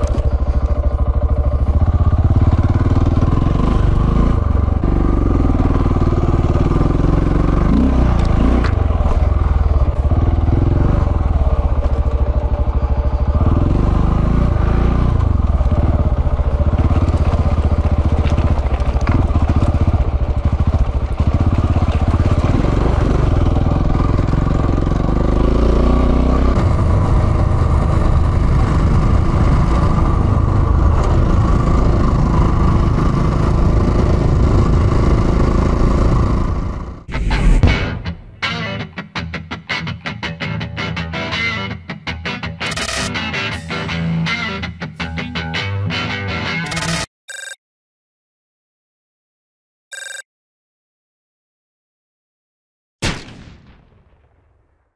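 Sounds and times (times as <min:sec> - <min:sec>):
motorcycle engine revving: 0:00.0 - 0:38.4.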